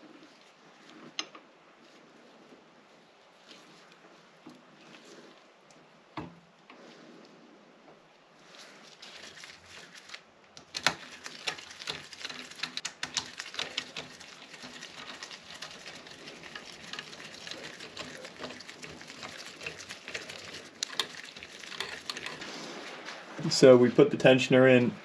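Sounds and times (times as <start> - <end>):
rain pattering on a roof: 9.0 - 25.0.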